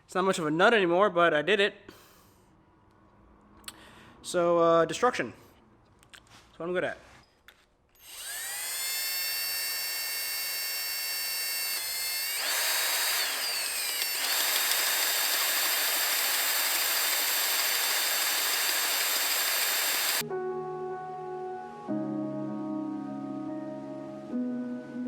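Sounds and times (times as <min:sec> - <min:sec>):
grinding into metal: 0:08.0 - 0:20.2
power tool whining: 0:08.0 - 0:20.2.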